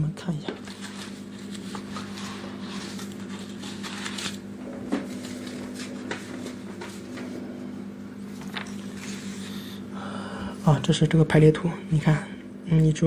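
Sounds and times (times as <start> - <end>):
steady low hum: 0.0 - 13.0
rustling and handling noises: 0.4 - 7.5.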